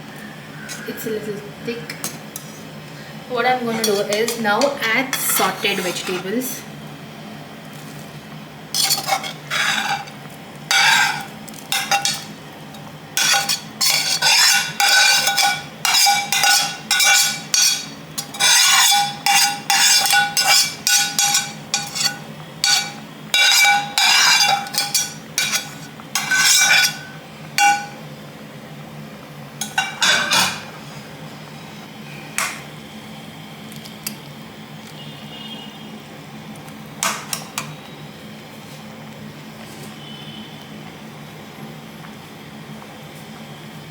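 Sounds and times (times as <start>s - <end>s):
steady low hum: 1.2s - 34.7s
metal spoon scraping a pan: 3.6s - 6.4s, 8.8s - 28.0s, 29.6s - 30.7s
sauce boiling: 5.9s - 29.8s.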